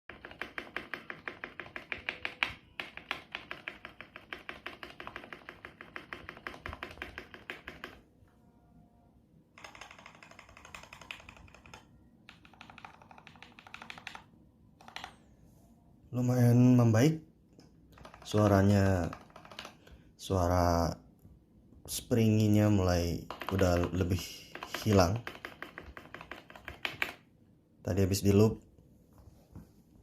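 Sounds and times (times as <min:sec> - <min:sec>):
mechanical keyboard typing: 0:00.1 - 0:08.1, 0:09.6 - 0:15.3, 0:17.6 - 0:20.0, 0:22.4 - 0:27.3.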